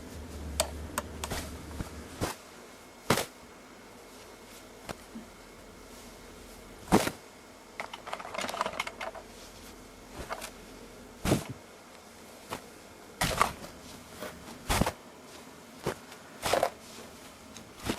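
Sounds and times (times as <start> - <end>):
hair swishing against chair: 0.0 - 2.5, 12.4 - 17.9.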